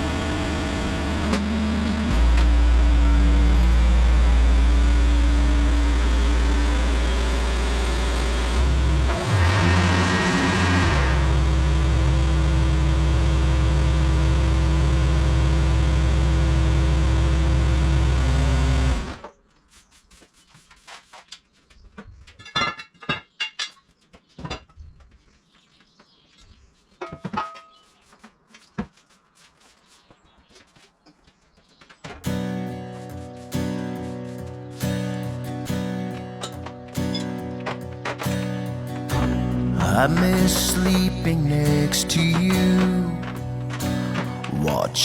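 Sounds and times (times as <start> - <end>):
engine humming: 0.0 - 19.2, 32.3 - 45.0
music: 32.3 - 45.0.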